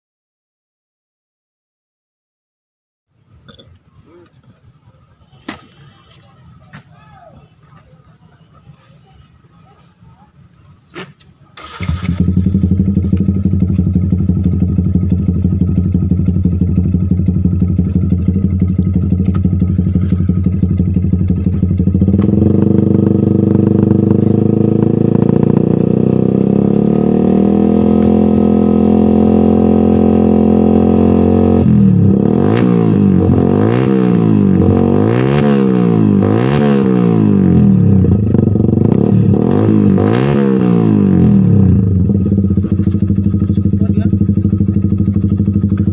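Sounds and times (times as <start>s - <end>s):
motorcycle engine revving: 11.6s - 45.9s.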